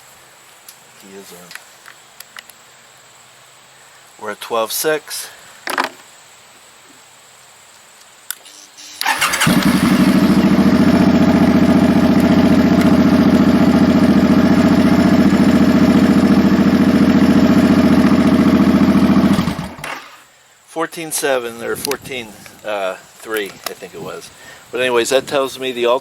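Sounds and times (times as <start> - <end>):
motorcycle engine starting and idling: 8.9 - 20.2.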